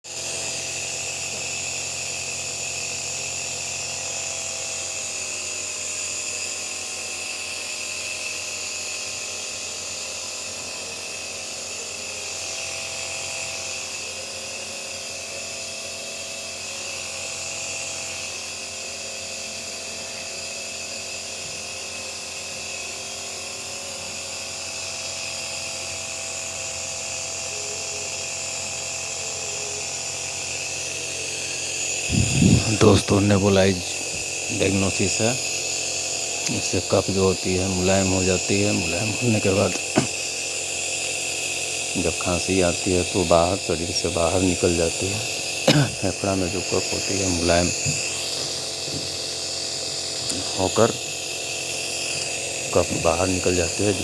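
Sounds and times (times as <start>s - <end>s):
nebulizer compressor motor hum: 0.0s - 54.0s
hiss of air and mist: 31.7s - 54.0s.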